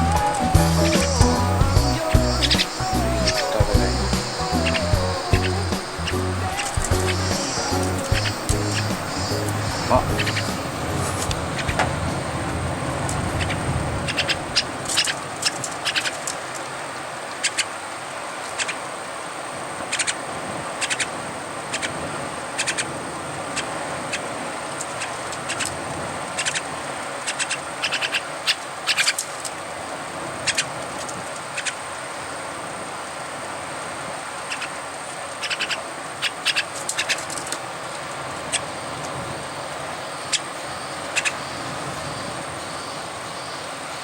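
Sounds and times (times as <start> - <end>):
steady background hiss: 0.0 - 44.0
bird chick sharp calls: 0.2 - 12.0.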